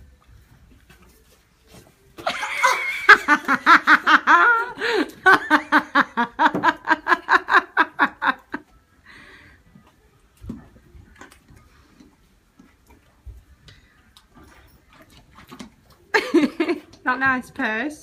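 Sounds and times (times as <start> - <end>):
person laughing hard: 2.2 - 8.6.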